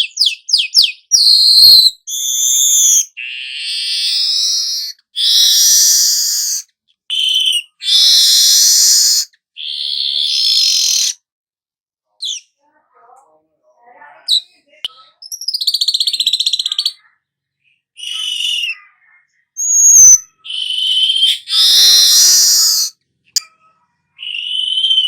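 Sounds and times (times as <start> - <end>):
sharp bird chirps: 0.0 - 11.2, 14.2 - 25.0
weaver bird singing: 0.0 - 11.2, 15.2 - 17.0, 18.0 - 18.9, 19.6 - 22.9
rasping buzzing bird phrases: 1.2 - 11.2, 18.0 - 23.0.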